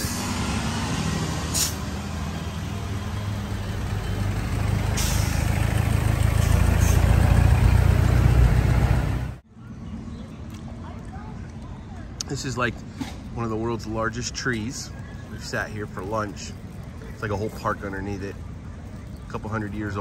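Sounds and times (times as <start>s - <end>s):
heavy vehicle engine running: 0.0s - 9.4s
air brake hisses: 1.4s - 1.9s, 4.9s - 5.5s.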